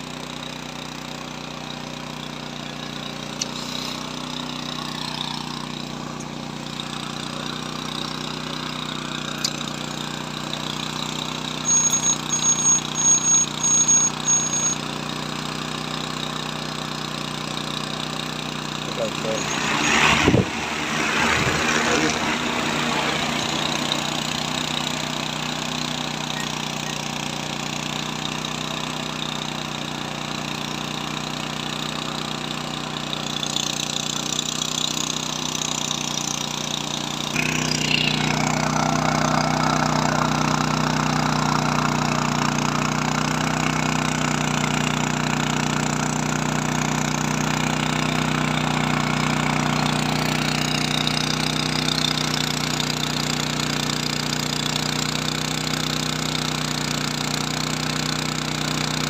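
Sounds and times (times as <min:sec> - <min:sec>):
drone propellers humming: 0:02.4 - 0:14.9, 0:18.1 - 0:27.2, 0:37.3 - 0:42.9.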